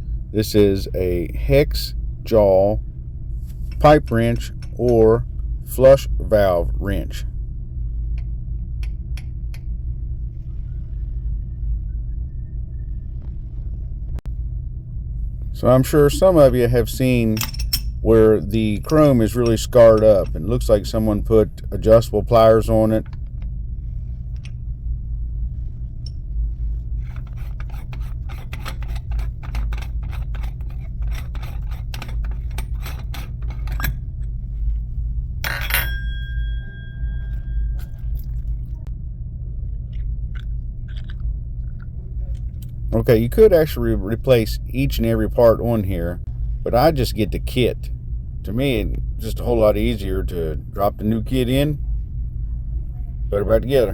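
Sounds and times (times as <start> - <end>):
steady low hum: 0.0 - 53.9
steady low rumble: 0.0 - 53.9
metal scraping and clicking: 3.5 - 5.2, 18.8 - 21.0, 27.0 - 34.8.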